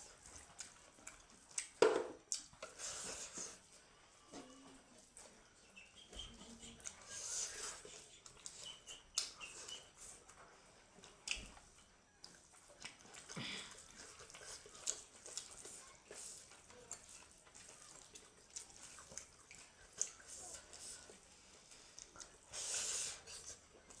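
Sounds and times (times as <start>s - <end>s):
chewing and mouth smacks: 0.0s - 3.7s, 4.4s - 24.0s.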